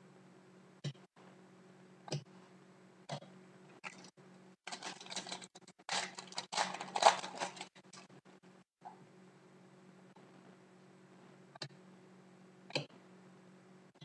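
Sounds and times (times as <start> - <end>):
cards rustling and flicking: 4.7 - 8.0.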